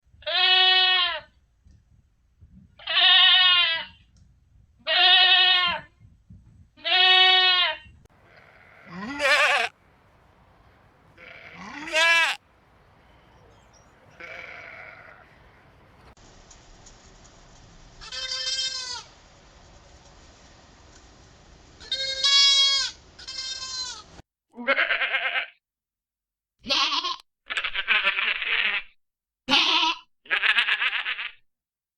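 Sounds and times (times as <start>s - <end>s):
goat bleating: 0.2s - 1.3s, 2.8s - 4.0s, 4.8s - 5.9s, 6.8s - 9.8s, 11.2s - 12.4s, 14.1s - 15.3s, 18.0s - 19.1s, 21.8s - 25.6s, 26.6s - 31.4s
faint hiss: 12.4s - 24.2s.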